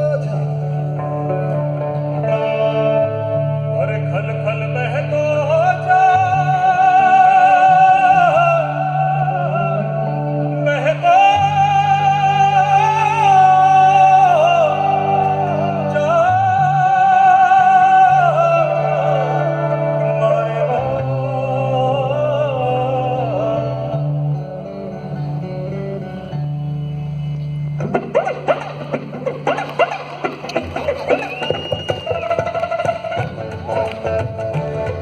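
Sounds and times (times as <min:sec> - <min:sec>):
slow lead melody with vibrato: 0:00.0 - 0:31.0.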